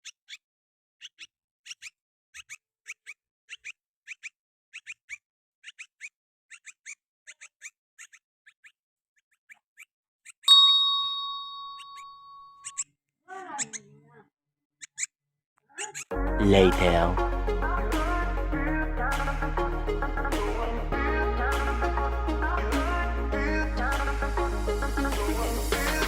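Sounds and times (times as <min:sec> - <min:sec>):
baby bird peeping: 0:01.0 - 0:08.8, 0:11.7 - 0:12.8, 0:13.5 - 0:13.8
bell-like ding: 0:10.5 - 0:12.6.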